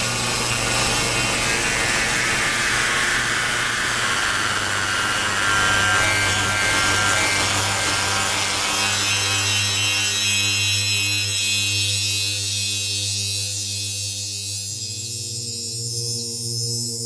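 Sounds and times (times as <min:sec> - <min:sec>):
harsh rasping synthesizer drone: 0:00.0 - 0:07.6
buzzing synthesizer tones: 0:00.1 - 0:05.2.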